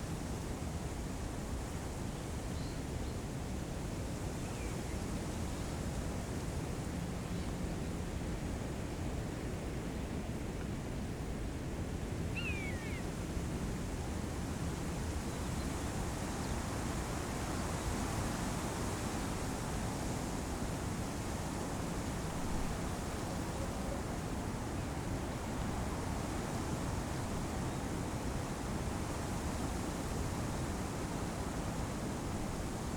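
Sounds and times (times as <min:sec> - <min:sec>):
wind blowing through trees: 0:11.0 - 0:32.9.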